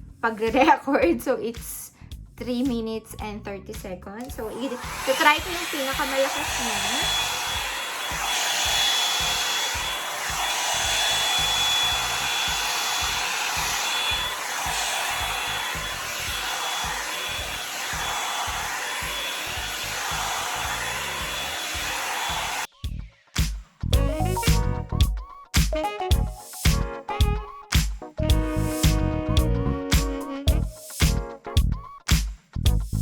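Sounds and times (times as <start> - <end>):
hair dryer blowing: 4.3 - 22.7.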